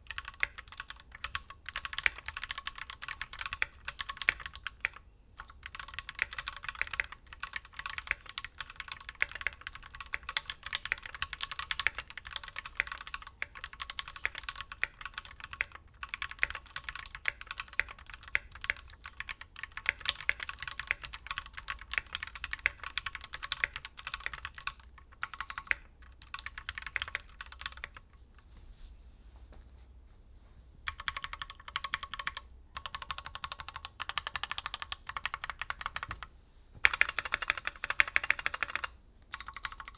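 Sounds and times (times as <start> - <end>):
fast typing on mechanical keyboard: 0.0 - 28.0, 30.9 - 39.9.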